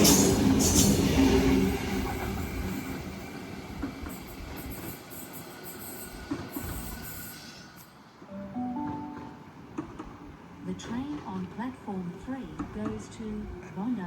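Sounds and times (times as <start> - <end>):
electric train rumbling: 0.0 - 13.7
station announcement chime: 8.3 - 9.7.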